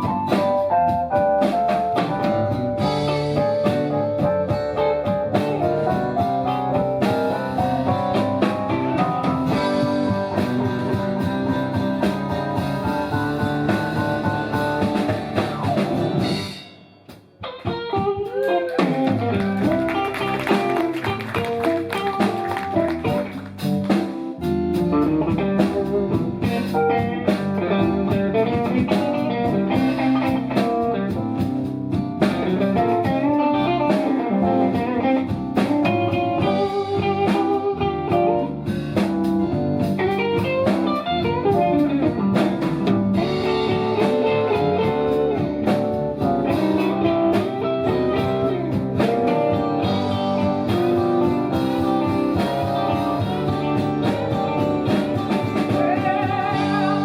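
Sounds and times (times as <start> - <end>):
lead instrument solo: 0.0 - 16.6, 17.4 - 31.2, 40.0 - 57.0
bass: 0.0 - 57.0
drums: 0.0 - 57.0
rhythm guitar: 0.0 - 57.0.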